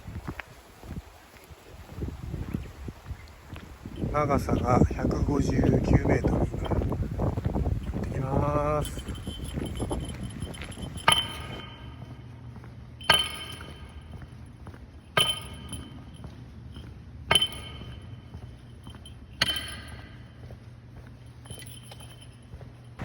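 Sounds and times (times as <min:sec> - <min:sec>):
steady low hum: 0:00.0 - 0:23.0
small metal bell ringing: 0:03.9 - 0:12.3, 0:13.0 - 0:14.2, 0:15.0 - 0:20.5, 0:21.3 - 0:23.0.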